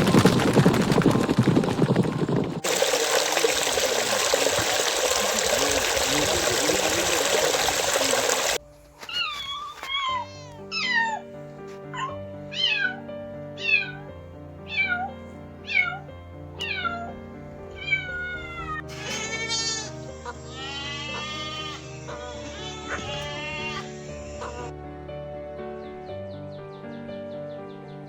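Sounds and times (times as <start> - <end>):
cat meowing: 9.1 - 11.3, 11.9 - 19.9, 20.5 - 24.7
background music: 10.0 - 28.0.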